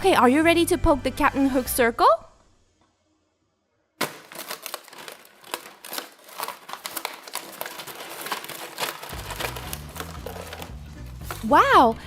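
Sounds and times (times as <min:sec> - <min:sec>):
paper tearing and crinkling: 0:04.0 - 0:11.8.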